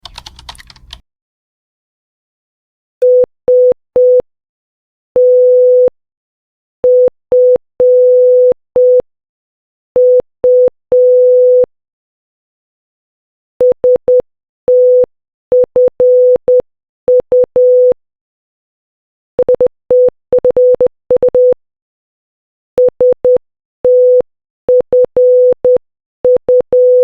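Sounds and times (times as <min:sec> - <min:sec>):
morse code beeps: 0:19.4 - 0:21.6, 0:22.8 - 0:27.0.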